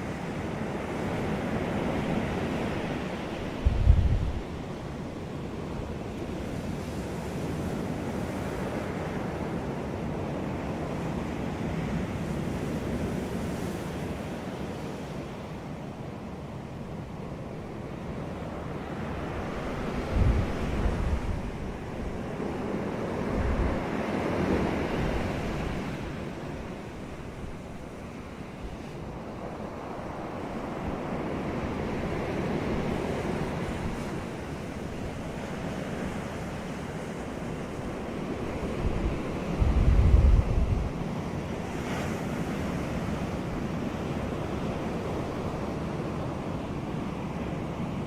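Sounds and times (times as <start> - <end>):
ocean surf washing onto beach: 0.0 - 48.0
wind thumps on microphone: 3.6 - 4.4.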